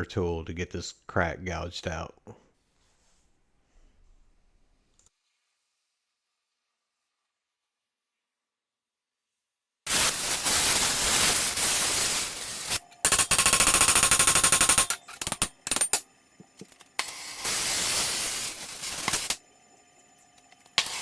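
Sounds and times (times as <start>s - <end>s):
torch hissing: 9.9s - 16.0s, 16.9s - 19.6s, 20.4s - 21.0s.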